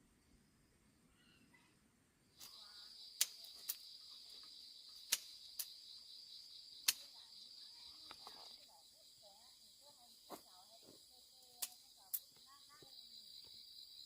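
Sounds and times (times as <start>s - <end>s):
insects trilling: 2.2s - 14.0s
sharp clicks: 2.4s - 3.8s, 5.0s - 5.8s, 6.8s - 7.1s.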